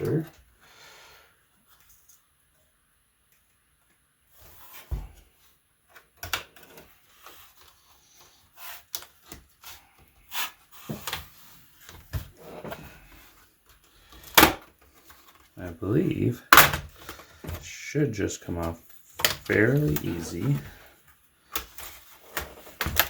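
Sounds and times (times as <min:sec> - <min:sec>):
plastic parts knocking and clicking: 0:14.1 - 0:15.5, 0:16.5 - 0:17.7, 0:18.6 - 0:20.7, 0:21.5 - 0:23.0.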